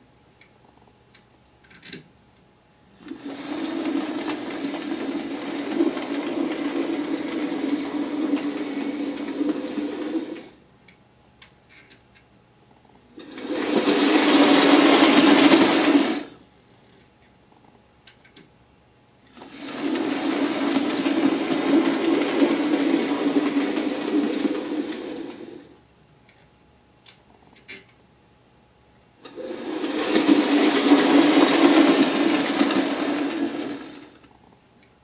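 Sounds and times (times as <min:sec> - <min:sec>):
model train motor whirring: 0:03.1 - 0:10.5, 0:19.4 - 0:25.7, 0:29.2 - 0:34.1.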